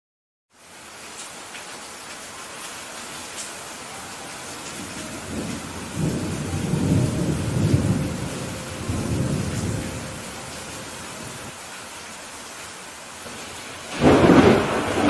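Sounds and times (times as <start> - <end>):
steady rain hissing: 0.5 - 15.0
rolling thunder: 4.7 - 11.5, 13.3 - 15.0.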